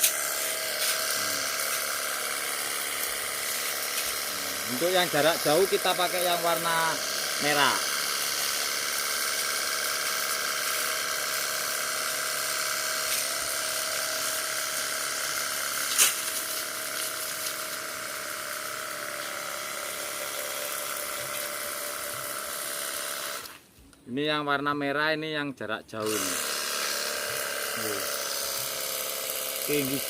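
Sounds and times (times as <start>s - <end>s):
water jet hissing: 0.0s - 11.7s
electric pump motor whining: 0.0s - 23.7s, 26.0s - 30.0s.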